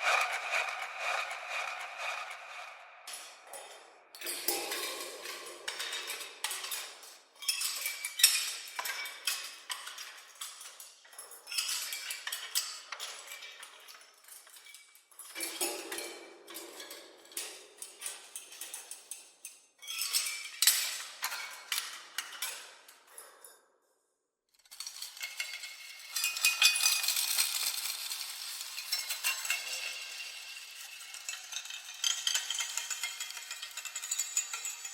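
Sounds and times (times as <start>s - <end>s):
small metal objects clattering: 24.6s - 34.9s.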